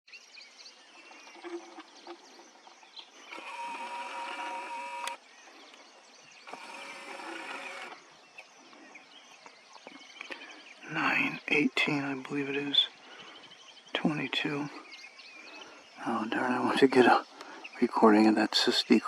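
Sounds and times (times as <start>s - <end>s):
faint bird chirps: 0.1s - 19.0s
small motor whining: 3.2s - 5.2s, 6.4s - 8.1s.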